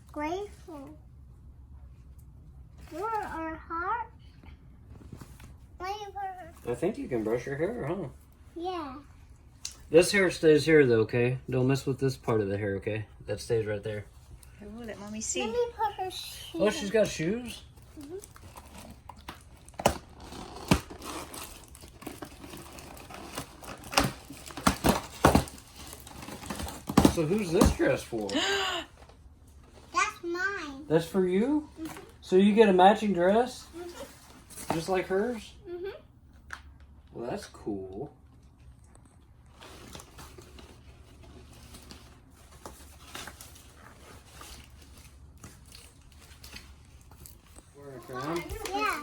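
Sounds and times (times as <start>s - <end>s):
light packaging rustling: 13.6s - 29.9s, 38.3s - 49.0s.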